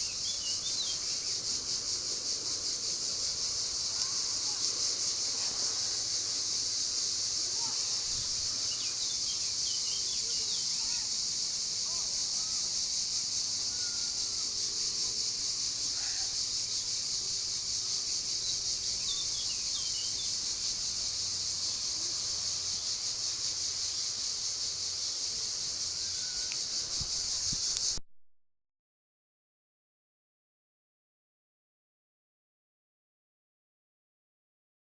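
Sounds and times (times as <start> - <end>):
cicadas buzzing: 0.0 - 28.0
faint bird chirps: 13.6 - 14.5, 18.4 - 20.3, 25.9 - 27.9.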